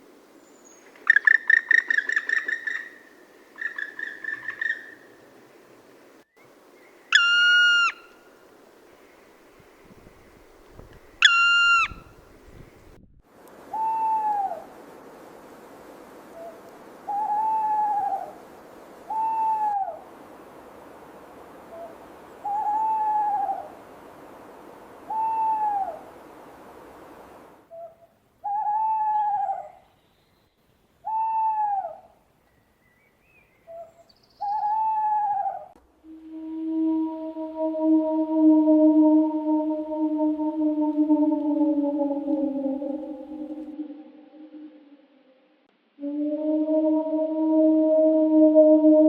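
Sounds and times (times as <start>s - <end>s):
woodpecker high call: 0.8s - 5.4s, 6.8s - 8.3s, 10.3s - 12.2s
owl hooting: 1.0s - 5.4s, 7.1s - 8.3s, 10.0s - 12.7s, 13.7s - 14.7s, 16.3s - 18.4s, 19.1s - 20.1s, 21.6s - 23.8s, 25.0s - 26.2s, 27.7s - 29.8s, 31.0s - 32.1s, 33.7s - 36.7s, 37.4s - 45.0s.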